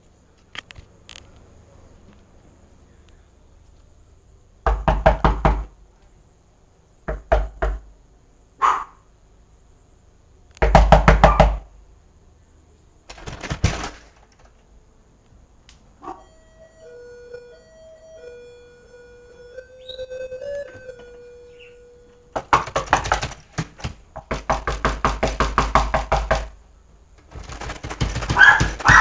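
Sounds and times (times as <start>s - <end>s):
rapid knocking: 13.1s - 14.4s, 22.3s - 26.6s, 27.2s - 29.0s.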